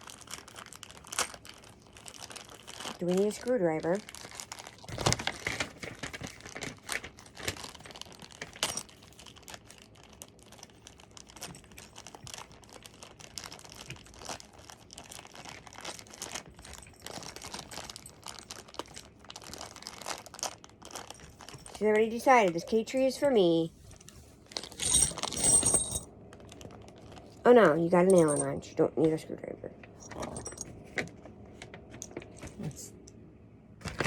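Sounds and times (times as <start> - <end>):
plastic packaging crinkling: 0.0 - 22.8, 23.8 - 27.5.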